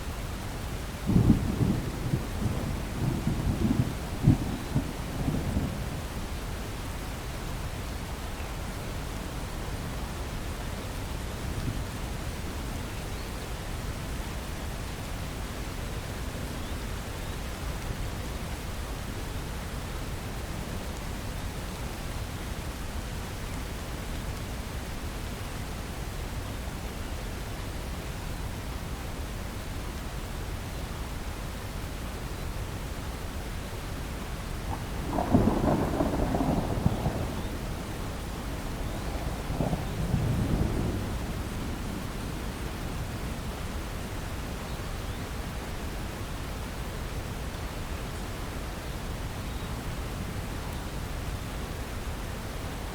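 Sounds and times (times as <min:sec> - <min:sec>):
steady rain hiss: 0:00.0 - 0:52.9
low thunder rumble: 0:00.8 - 0:07.0, 0:34.5 - 0:44.6.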